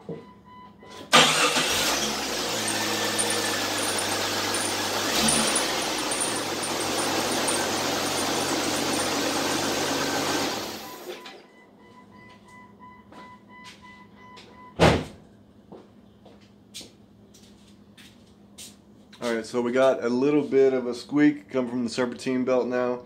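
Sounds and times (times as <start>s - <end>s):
car engine idling: 1.1s - 11.1s.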